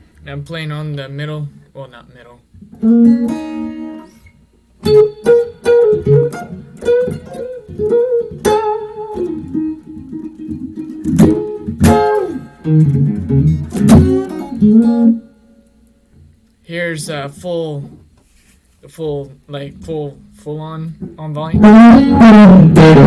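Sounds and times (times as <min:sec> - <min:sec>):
bluesy electric guitar: 0:02.5 - 0:16.3, 0:19.8 - 0:23.0.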